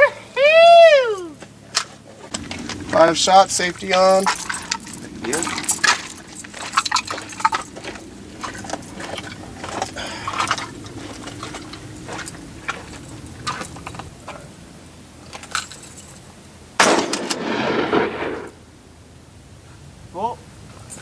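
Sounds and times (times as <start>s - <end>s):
loud burst of rushing noise: 16.8s - 18.8s.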